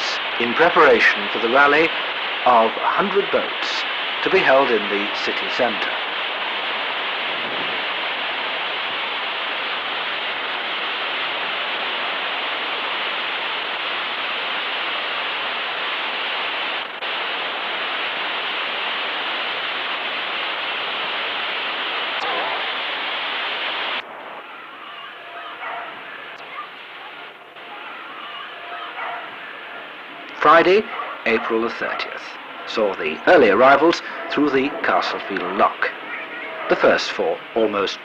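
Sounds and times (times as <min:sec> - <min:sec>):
loud rushing noise: 0:00.0 - 0:26.9.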